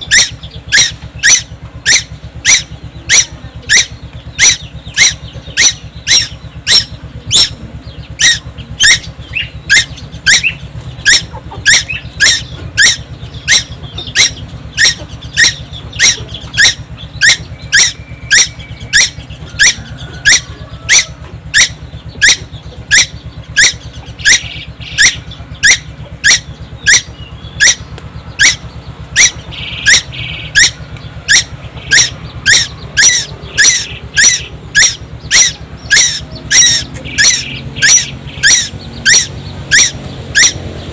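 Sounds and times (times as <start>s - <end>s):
bird squeaking calls: 0.0s - 40.9s
steady low hum: 0.0s - 40.9s.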